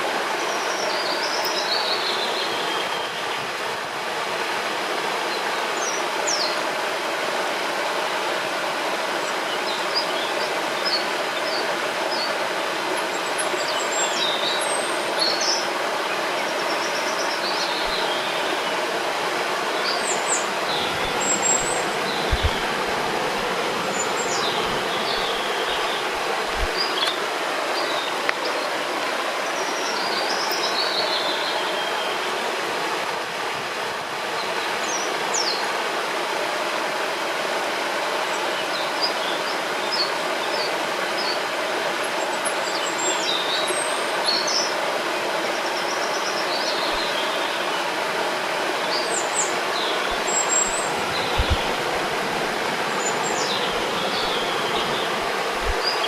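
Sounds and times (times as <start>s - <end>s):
river flowing: 0.0s - 56.0s
small birds chirping: 13.2s - 18.8s, 19.8s - 28.6s, 48.9s - 56.0s
low thumps: 20.8s - 23.4s, 50.9s - 51.9s.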